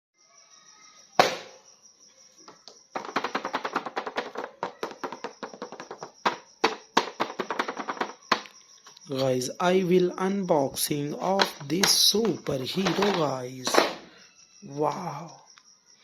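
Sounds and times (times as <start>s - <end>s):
sharp knock: 1.2s - 1.6s.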